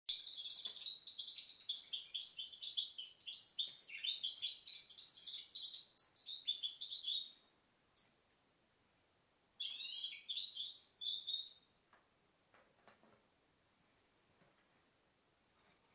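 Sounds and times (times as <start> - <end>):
bird singing high twittering song: 0.1 - 8.2, 9.6 - 11.8.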